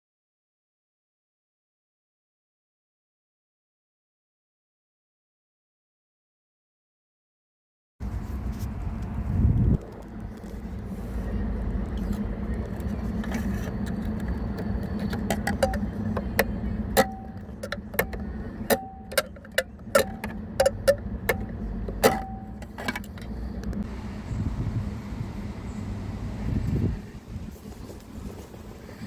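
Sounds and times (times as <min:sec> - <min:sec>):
road and tyre rumble: 0:08.0 - 0:29.0
dashboard clicks and rattles: 0:11.9 - 0:23.8.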